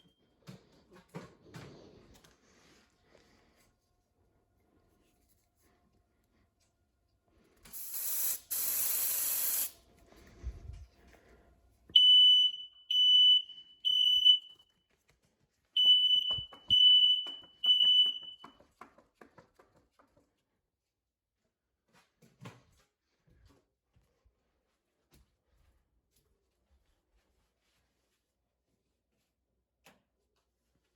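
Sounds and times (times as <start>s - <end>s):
aerosol spray hissing: 7.7s - 9.8s
smoke alarm beeping: 7.8s - 9.8s, 12.0s - 14.7s, 15.8s - 18.6s.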